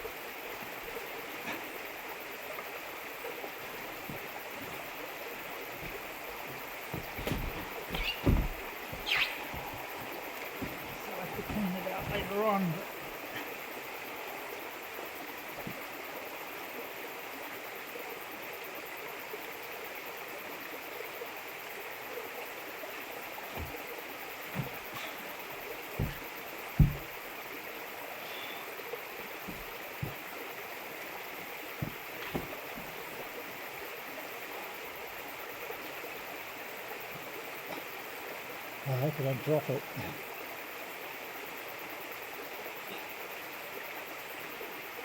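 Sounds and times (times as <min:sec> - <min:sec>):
running water rushing: 0:00.0 - 0:17.4, 0:21.4 - 0:40.9
dull thumps: 0:03.4 - 0:13.5, 0:23.5 - 0:27.3, 0:29.4 - 0:30.3, 0:31.7 - 0:33.3.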